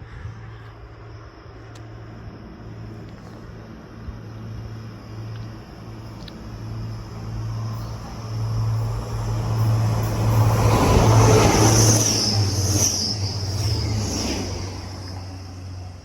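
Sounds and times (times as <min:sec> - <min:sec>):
rail hiss: 0:00.0 - 0:16.0
train engine hum: 0:00.0 - 0:16.0
train wheel and air rush: 0:06.4 - 0:16.0.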